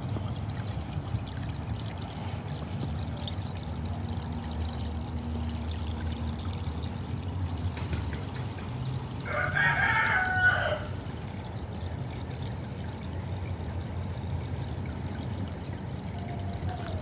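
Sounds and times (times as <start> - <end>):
fountain water pouring and splashing: 0.0 - 17.0
rooster crowing: 9.2 - 11.0.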